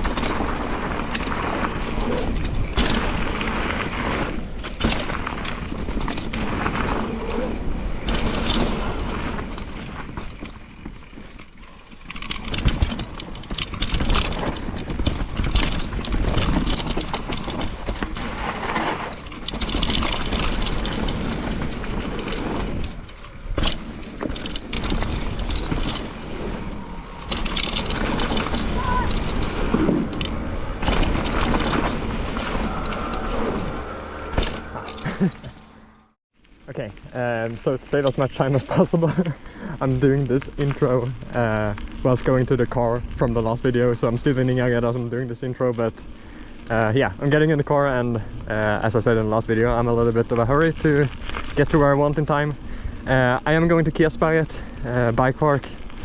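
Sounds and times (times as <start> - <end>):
bike knocking and rattling: 0.0 - 35.6
bike tyre rumble: 0.0 - 56.0
wind: 0.0 - 56.0.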